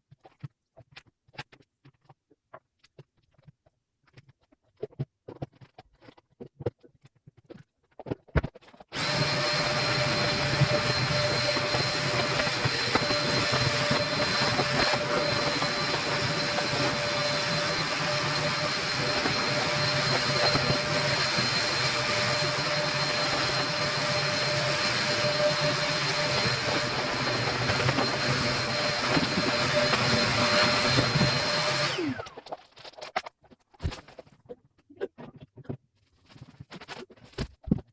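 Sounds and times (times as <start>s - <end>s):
vacuum cleaner running: 8.9s - 32.4s.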